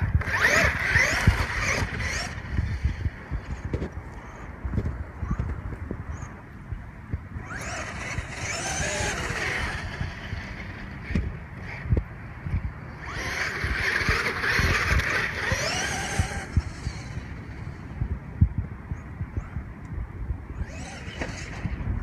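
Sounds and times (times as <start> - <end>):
electric motor whining: 0.0 - 3.9, 7.4 - 12.0, 12.9 - 17.9, 20.5 - 22.0.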